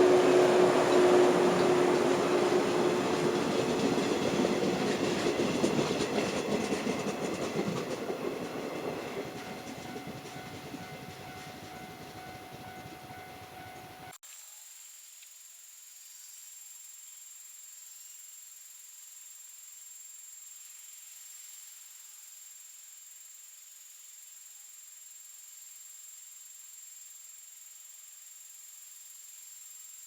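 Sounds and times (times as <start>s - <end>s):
electric train passing: 0.0s - 14.2s.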